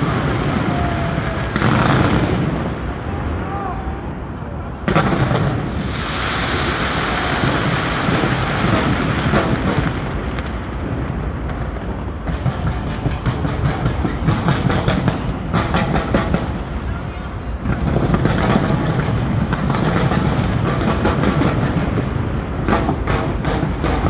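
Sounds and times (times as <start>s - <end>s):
firework bang: 0.0s - 16.8s, 17.6s - 24.0s
fireworks hissing crackle: 0.0s - 16.8s, 17.6s - 24.0s
rapid crackling pops: 17.6s - 24.0s.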